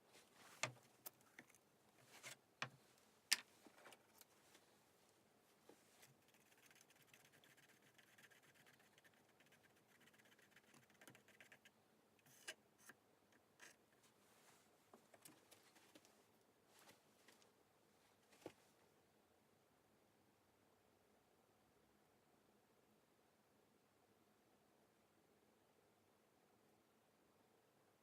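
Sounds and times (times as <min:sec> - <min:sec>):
faint scratchy rasping: 0:05.5 - 0:16.2.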